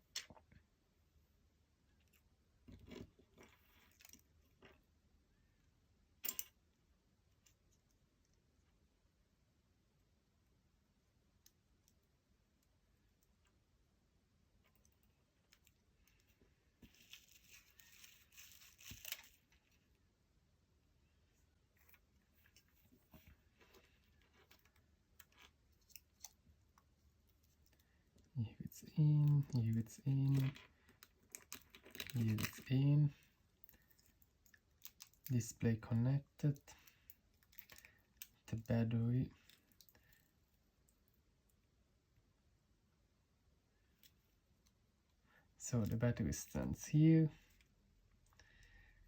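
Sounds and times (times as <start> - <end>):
soft rustle of small parts: 0.0 - 49.0
light clicks of small parts: 6.2 - 6.6, 21.8 - 32.7, 33.6 - 35.4, 36.5 - 38.7, 39.3 - 41.6
tearing crinkling rustle: 16.8 - 19.8, 30.2 - 32.7.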